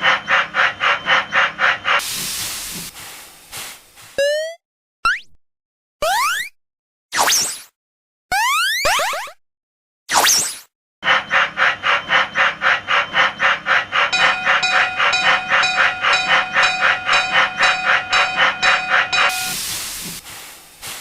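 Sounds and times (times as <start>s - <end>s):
cartoon steam locomotive chuffing: 0.0s - 4.2s, 11.0s - 21.0s
steam hiss: 2.0s - 4.2s, 17.3s - 21.0s
steady train whistle: 14.1s - 19.8s.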